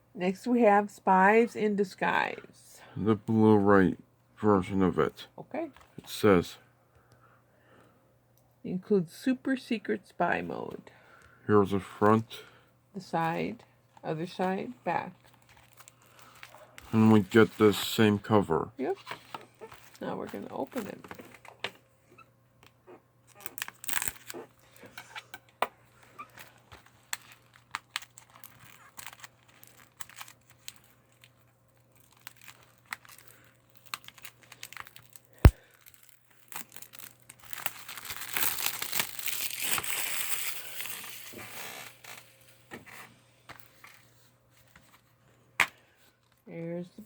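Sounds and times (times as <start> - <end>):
plastic wrap crinkling: 13.3 - 18.2, 18.9 - 42.5.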